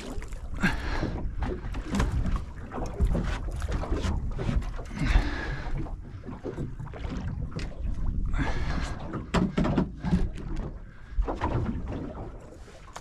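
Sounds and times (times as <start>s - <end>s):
water against hull: 0.0s - 13.0s.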